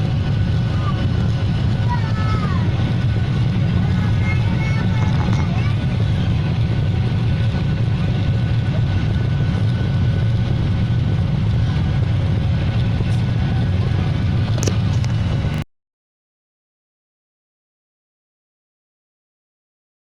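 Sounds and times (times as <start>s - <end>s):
airliner engines rumbling: 0.0s - 15.6s.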